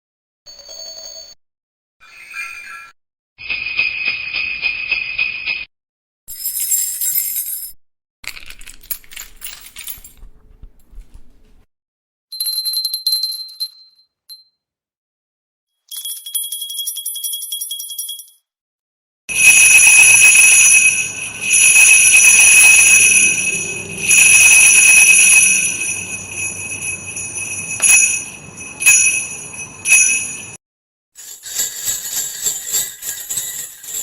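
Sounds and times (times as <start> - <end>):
jingle bells shaken: 6.3 - 7.7, 15.9 - 18.4, 19.3 - 30.6, 31.2 - 34.0.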